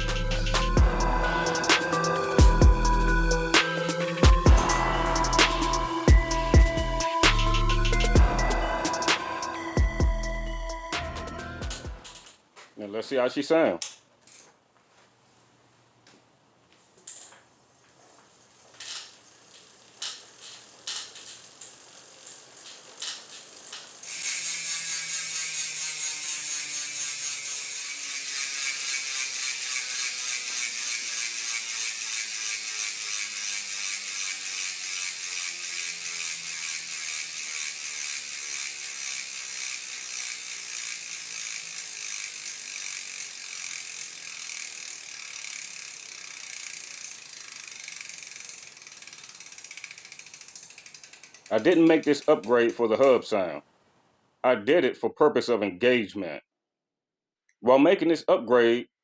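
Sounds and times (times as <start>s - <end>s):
bicycle hub ratchet buzz: 0.0s - 12.4s, 17.0s - 52.5s
scattered hub clicks: 18.2s - 53.2s.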